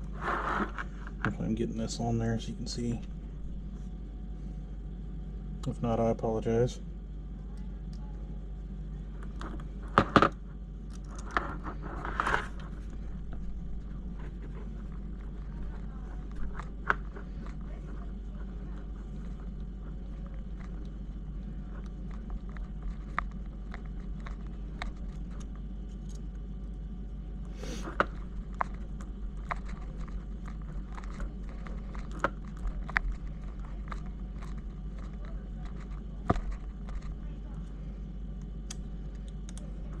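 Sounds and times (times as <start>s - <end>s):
steady low hum: 0.0s - 40.0s
short rustling scrape: 0.1s - 0.8s.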